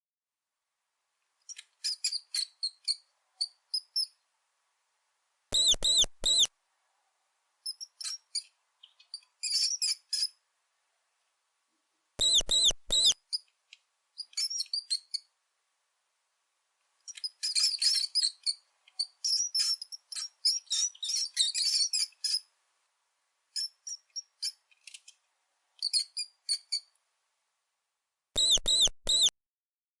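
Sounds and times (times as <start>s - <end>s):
mouse squeaking: 1.5s - 4.2s, 5.5s - 6.5s, 7.7s - 10.4s, 12.2s - 13.5s, 14.2s - 15.3s, 17.1s - 22.5s, 23.6s - 25.1s, 25.8s - 26.9s, 28.4s - 29.3s.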